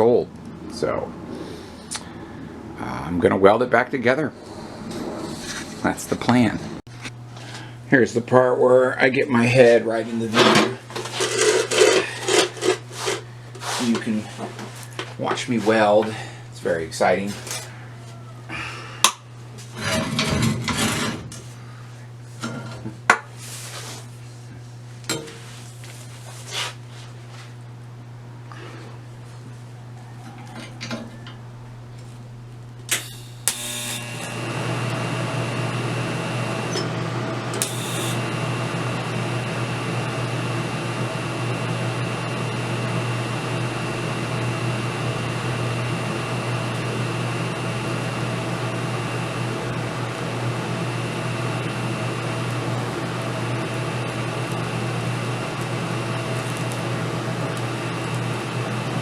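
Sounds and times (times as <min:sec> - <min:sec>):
mains hum: 0:00.0 - 0:59.0
welding arc noise: 0:32.3 - 0:59.0.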